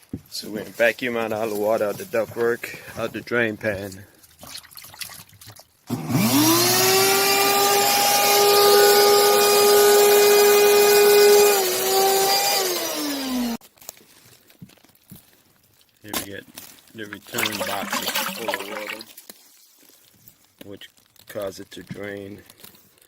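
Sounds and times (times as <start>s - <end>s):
shop vacuum motor whine: 5.9s - 13.6s.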